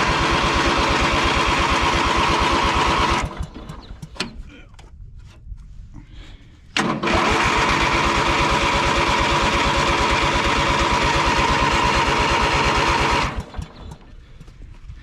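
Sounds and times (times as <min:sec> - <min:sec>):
engine cranking with electric starter: 0:00.0 - 0:04.3, 0:06.8 - 0:14.2.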